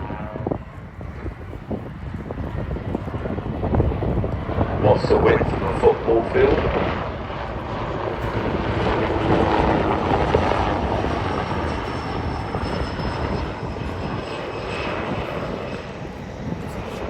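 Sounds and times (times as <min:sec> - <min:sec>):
helicopter engines and rotor: 0:00.0 - 0:17.0.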